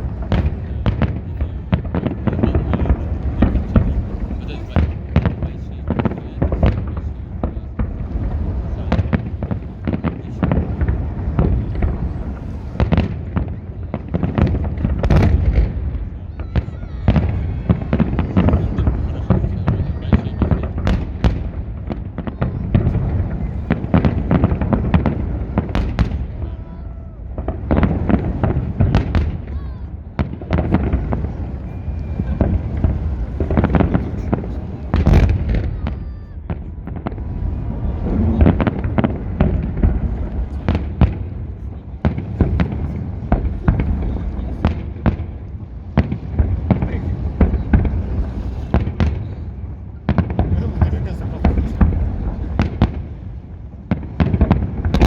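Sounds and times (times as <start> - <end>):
continuous low rumble: 0.0 - 55.0
fireworks cracks and bangs: 0.0 - 55.0
low rumble: 30.6 - 35.8, 36.5 - 44.6.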